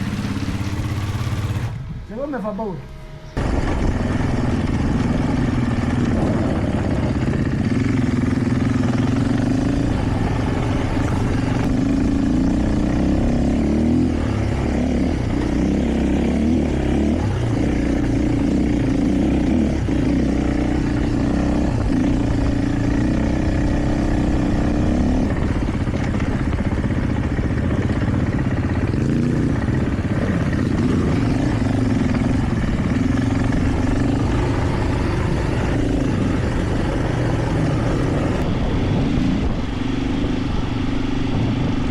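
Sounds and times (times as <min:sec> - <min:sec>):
motorcycle engine running: 0:00.0 - 0:41.9.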